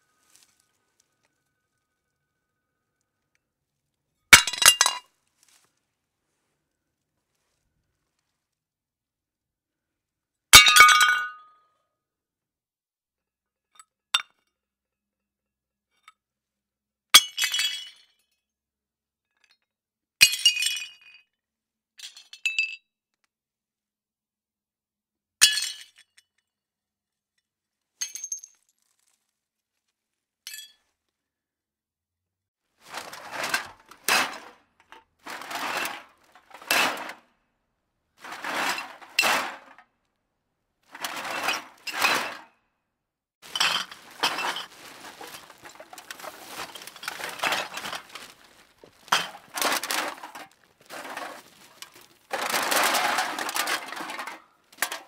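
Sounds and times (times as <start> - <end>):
plates smashing: 4.4 - 5.0, 35.3 - 37.2, 38.2 - 39.8, 43.4 - 55.0.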